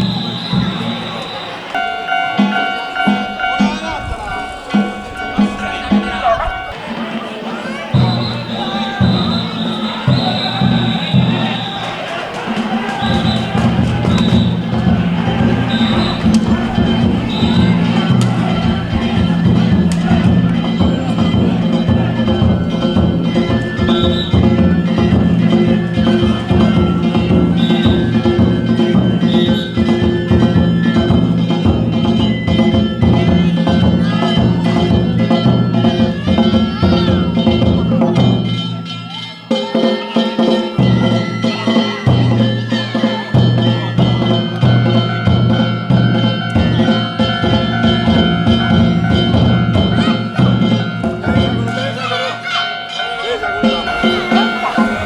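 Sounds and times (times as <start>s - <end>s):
metal hand gongs clanging: 0.0s - 55.0s
taiko drums beating: 0.0s - 55.0s.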